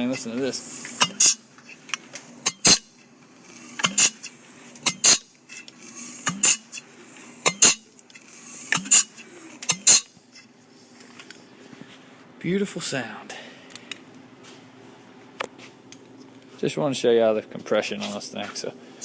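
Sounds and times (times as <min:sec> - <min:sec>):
sharp metallic clicks: 0:03.8 - 0:06.8, 0:07.4 - 0:10.1.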